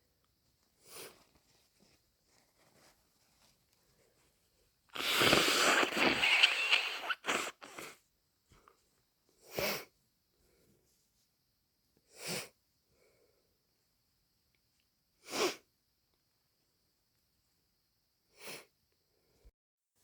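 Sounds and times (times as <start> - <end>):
person blowing nose: 5.0 - 8.0
short nasal bursts: 5.0 - 8.0.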